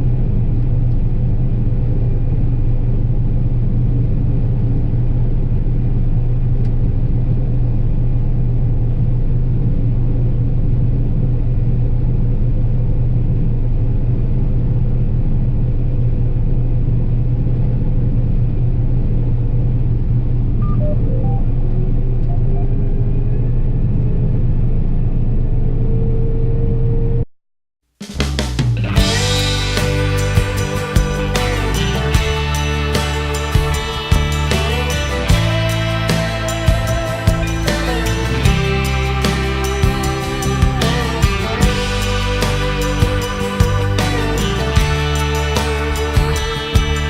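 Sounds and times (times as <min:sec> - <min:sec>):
combine harvester droning: 0:28.8 - 0:47.0.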